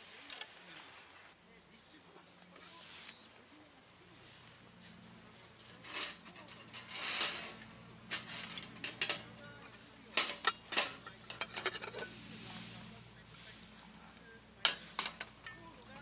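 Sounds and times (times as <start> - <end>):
hard objects clinking and clattering: 5.6 - 12.1, 14.6 - 16.0.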